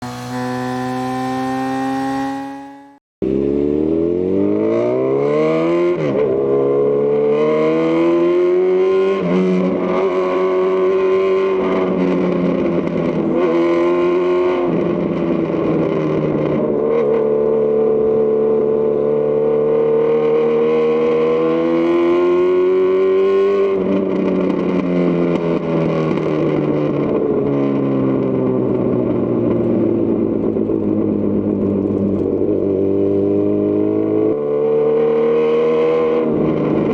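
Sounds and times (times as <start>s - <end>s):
motorcycle engine revving: 0.0s - 15.5s.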